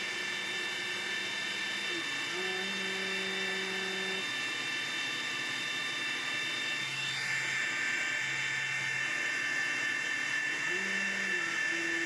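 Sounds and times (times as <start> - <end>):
router spindle high whine: 0.0 - 12.0
stepper motor tone: 10.4 - 12.0.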